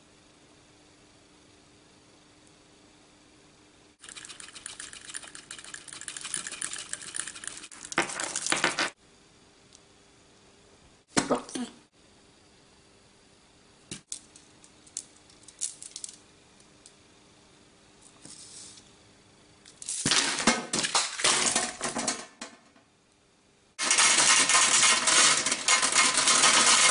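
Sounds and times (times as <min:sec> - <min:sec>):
continuous clatter: 0:23.8 - 0:26.9.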